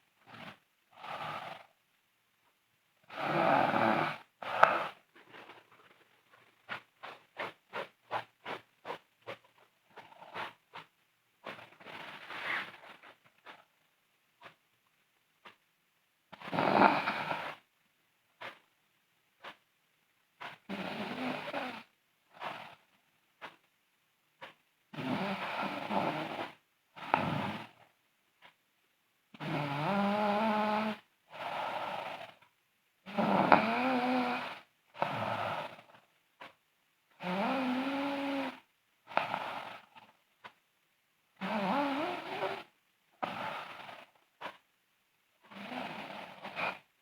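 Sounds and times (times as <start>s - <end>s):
woman snoring: 0.3s - 1.8s, 3.1s - 5.0s, 16.3s - 17.6s, 20.7s - 22.8s, 24.9s - 27.8s, 29.4s - 32.4s, 33.1s - 36.0s, 37.2s - 40.0s, 41.4s - 44.1s, 45.4s - 46.9s.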